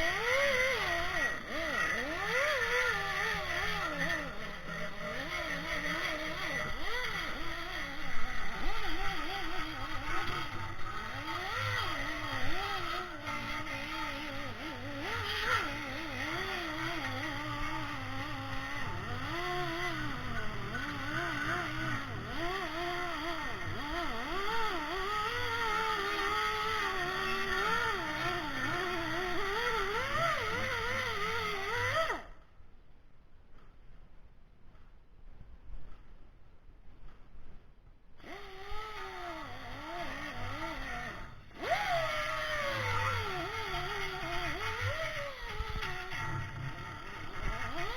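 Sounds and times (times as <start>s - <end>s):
motor running with wavering pitch: 0.0s - 32.5s, 38.2s - 47.9s.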